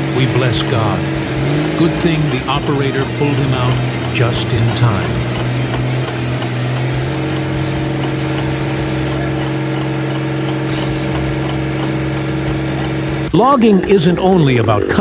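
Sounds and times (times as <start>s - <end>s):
engine running steadily: 0.0s - 15.0s
higher engine tone: 0.0s - 15.0s.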